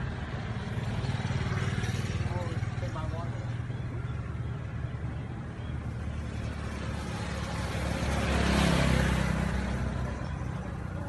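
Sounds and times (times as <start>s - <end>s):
vehicle engine passing: 0.0s - 11.0s.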